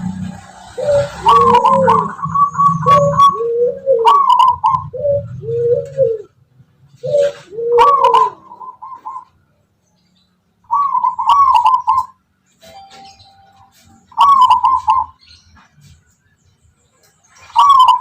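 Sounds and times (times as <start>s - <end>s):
dove cooing: 0.0s - 9.4s, 10.6s - 12.2s, 12.9s - 15.7s, 17.4s - 18.0s.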